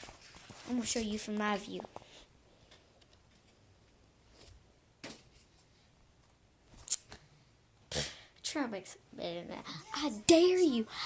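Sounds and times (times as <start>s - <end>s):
paper rustle: 0.0s - 1.2s.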